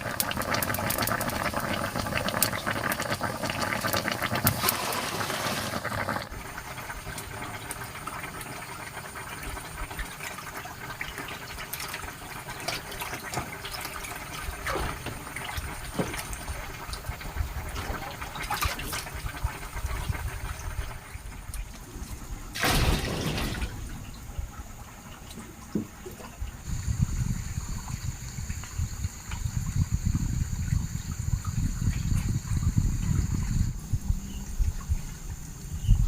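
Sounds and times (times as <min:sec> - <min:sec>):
water rushing: 0:00.0 - 0:08.4.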